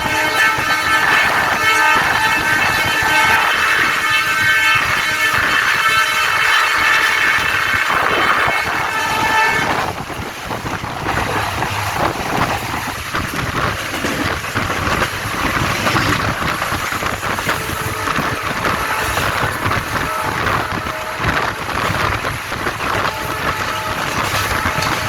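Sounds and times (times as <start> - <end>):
train horn blast: 0.0 - 10.1, 17.0 - 25.0
train rumble and wheel clatter: 0.0 - 25.0.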